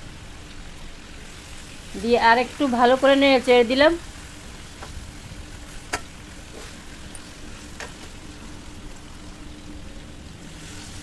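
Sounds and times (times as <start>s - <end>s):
chicken sizzling in a pan: 0.0s - 11.0s.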